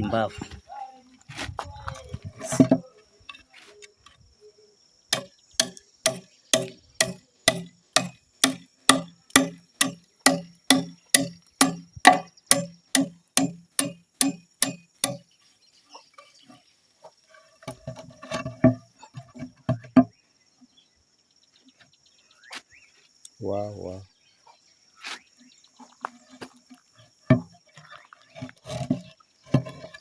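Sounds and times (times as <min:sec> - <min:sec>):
tool striking wood: 0:05.2 - 0:15.3, 0:27.3 - 0:27.5.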